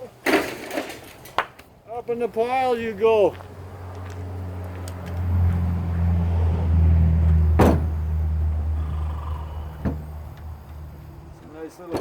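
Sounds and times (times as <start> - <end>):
low engine-like hum: 3.4 - 11.5.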